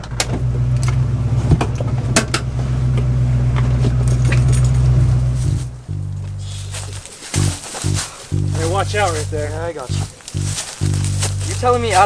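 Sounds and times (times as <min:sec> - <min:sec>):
vehicle engine idling: 0:00.0 - 0:12.0
light metallic rattles: 0:03.9 - 0:08.6.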